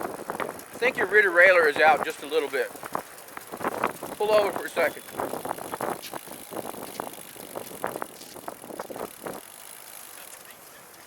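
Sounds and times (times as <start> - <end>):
tricycle drivetrain ticking: 0.0 - 11.0.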